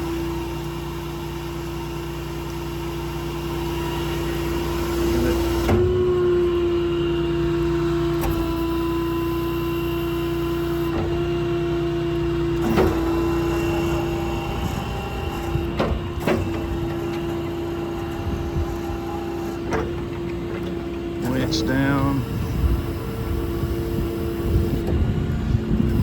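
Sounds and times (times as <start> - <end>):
diesel engine running: 0.0 - 26.0
hydraulic crane whine: 0.0 - 26.0
crane clicks and clunks: 12.1 - 21.4.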